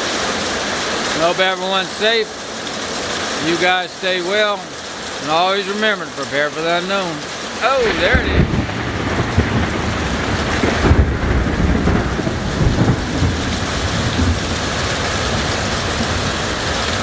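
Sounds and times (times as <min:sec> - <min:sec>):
heavy rain pouring: 0:00.0 - 0:17.0
thunder rumbling: 0:07.6 - 0:17.0.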